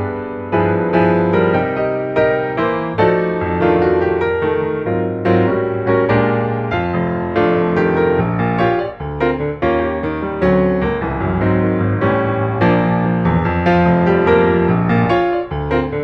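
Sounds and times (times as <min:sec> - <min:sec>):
piano music: 0:00.0 - 0:16.0.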